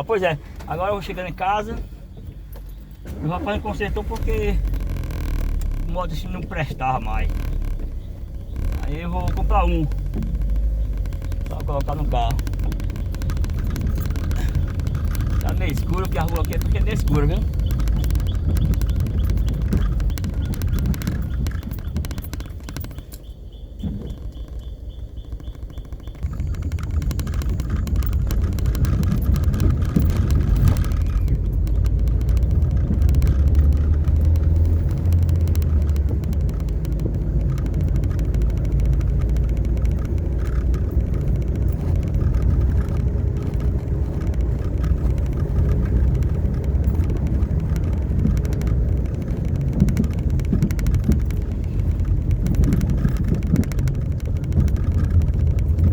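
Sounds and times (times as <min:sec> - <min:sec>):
car engine and road noise: 0:00.0 - 0:55.9.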